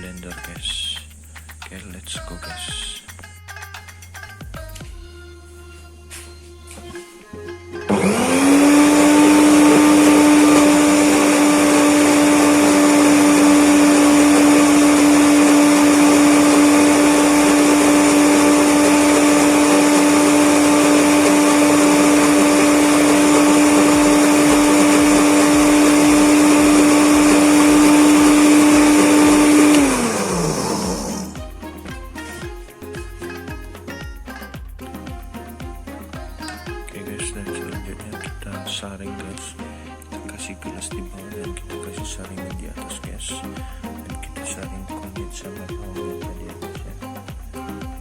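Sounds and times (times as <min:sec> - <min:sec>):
blender motor running: 0:07.9 - 0:32.5.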